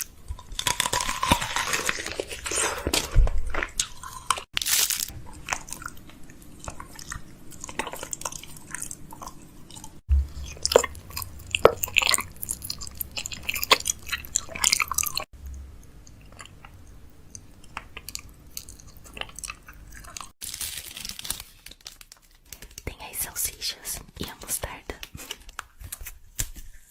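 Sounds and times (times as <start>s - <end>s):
packaging clicks taps and crinkles: 20.5s - 22.9s.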